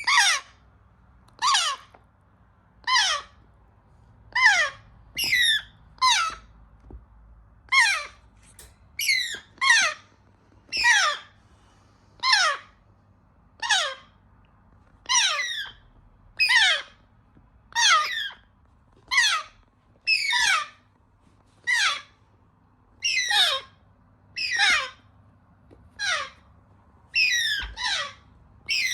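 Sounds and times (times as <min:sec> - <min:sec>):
parrot chicks begging calls: 0:00.0 - 0:00.6, 0:01.3 - 0:02.0, 0:02.8 - 0:03.4, 0:04.3 - 0:06.5, 0:07.7 - 0:08.2, 0:09.0 - 0:10.1, 0:10.7 - 0:11.4, 0:12.2 - 0:12.8, 0:13.6 - 0:14.1, 0:15.0 - 0:15.8, 0:16.4 - 0:17.0, 0:17.7 - 0:18.5, 0:19.1 - 0:20.9, 0:21.6 - 0:22.2, 0:23.0 - 0:25.1, 0:25.9 - 0:26.5, 0:27.1 - 0:28.9.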